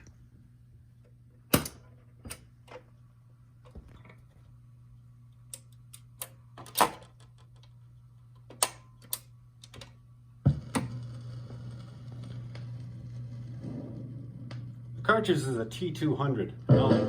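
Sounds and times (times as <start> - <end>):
low hum: 10.0 - 17.0
record surface crackle: 10.5 - 17.0.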